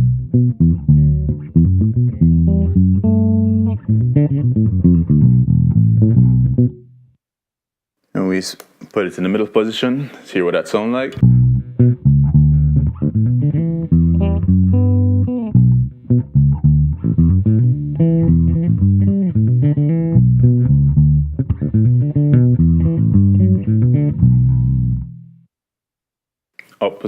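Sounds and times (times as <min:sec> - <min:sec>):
electric bass plucked notes: 0:00.0 - 0:07.2, 0:11.2 - 0:25.4.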